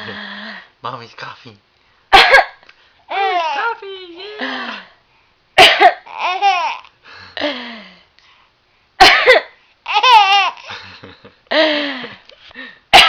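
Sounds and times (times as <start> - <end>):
adult coughing: 2.1 - 2.6, 5.6 - 6.0, 9.0 - 9.6
baby laughing: 3.1 - 3.8, 6.1 - 6.9, 9.9 - 10.9.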